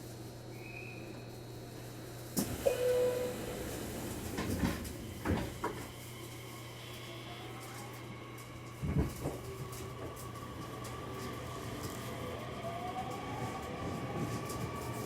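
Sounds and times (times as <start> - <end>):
train doors shutting with a bang: 2.4 - 6.0, 8.8 - 10.2
train humming: 2.4 - 15.0
short steady tone: 2.6 - 3.4
knocks from train carriage: 8.8 - 9.4.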